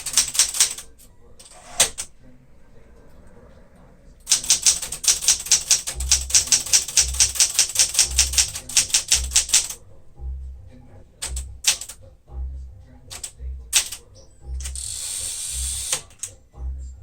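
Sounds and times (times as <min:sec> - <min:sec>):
manual typewriter keys striking: 0:00.0 - 0:02.1, 0:04.3 - 0:09.8, 0:11.2 - 0:12.0, 0:13.1 - 0:14.8, 0:15.9 - 0:16.4.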